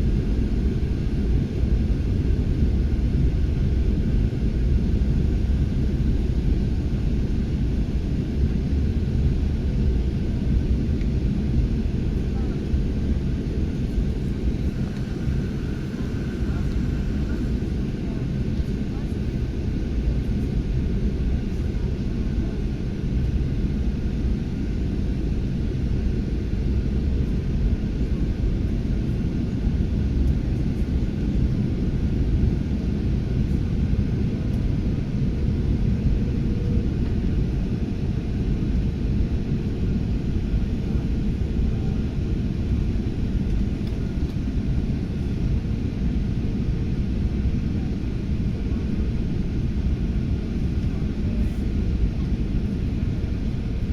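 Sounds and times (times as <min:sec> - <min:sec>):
jet engine rumble: 0:00.0 - 0:53.9.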